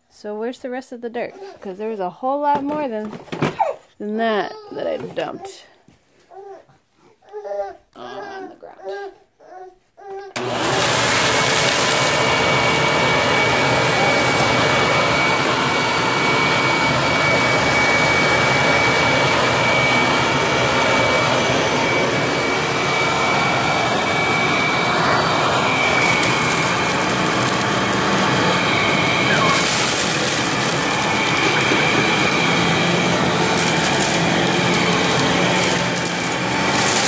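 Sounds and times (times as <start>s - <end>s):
vacuum cleaner running: 10.4s - 37.0s.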